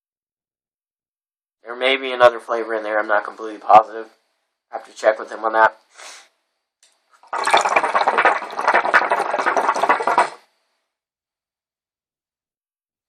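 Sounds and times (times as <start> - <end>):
hookah water bubbling: 7.2 - 10.5.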